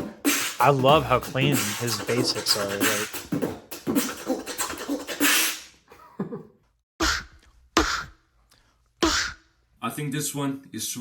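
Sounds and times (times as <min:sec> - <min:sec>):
beatboxing: 0:00.0 - 0:05.7, 0:07.0 - 0:08.2, 0:09.0 - 0:09.4.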